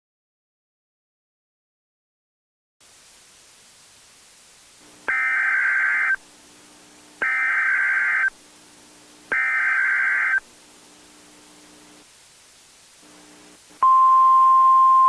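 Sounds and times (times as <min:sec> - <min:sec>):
steady hiss: 0:02.8 - 0:13.8
digital data tone bursts: 0:05.1 - 0:06.2, 0:07.2 - 0:08.4, 0:09.3 - 0:10.4.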